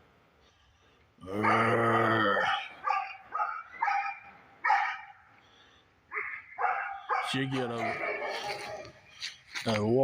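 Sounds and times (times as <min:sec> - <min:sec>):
cow bellowing: 0:01.2 - 0:04.0
dog barking: 0:02.5 - 0:05.2, 0:06.1 - 0:09.0.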